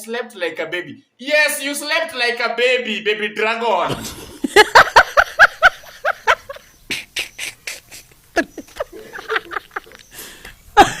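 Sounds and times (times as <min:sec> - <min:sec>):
person making breathy vocal sounds: 0:06.9 - 0:08.1.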